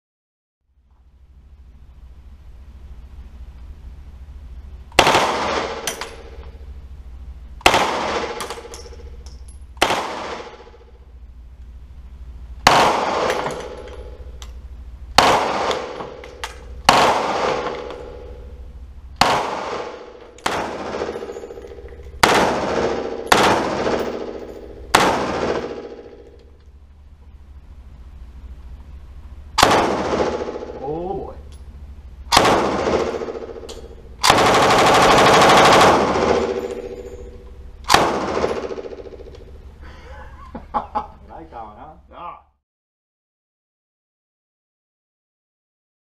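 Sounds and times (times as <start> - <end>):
automatic gunfire bursts: 7.6 - 8.7, 15.2 - 16.2, 16.9 - 18.1, 22.2 - 26.2, 29.6 - 30.9, 32.3 - 37.1, 37.9 - 39.2.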